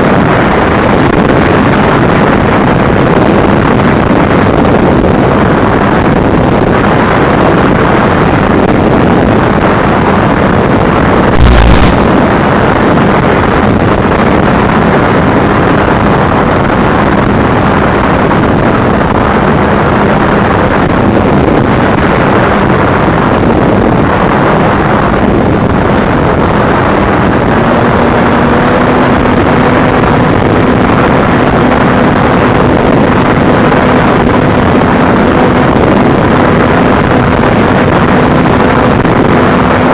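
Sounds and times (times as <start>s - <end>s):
wind rushing on microphone: 0.0s - 39.9s
drone motor whine: 11.3s - 12.5s.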